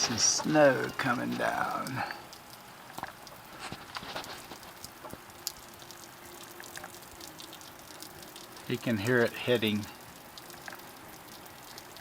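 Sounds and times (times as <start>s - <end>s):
snow falling on surfaces: 0.0s - 9.0s.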